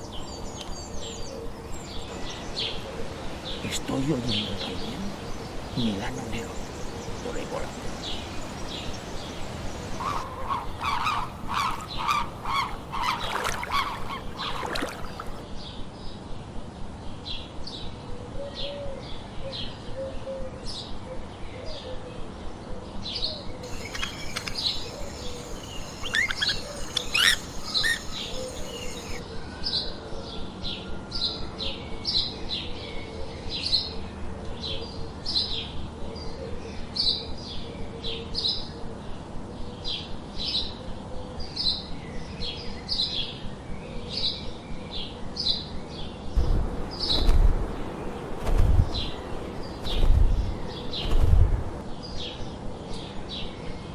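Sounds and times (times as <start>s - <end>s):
lower bird chattering calls: 1.5s - 10.2s, 23.7s - 29.2s.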